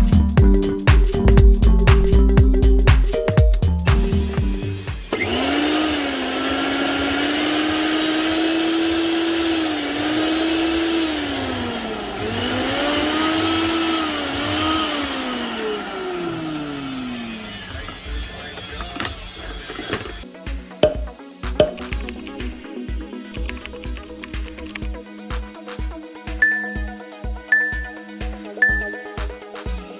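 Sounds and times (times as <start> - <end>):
mixer grinder motor whining: 4.6 - 20.2.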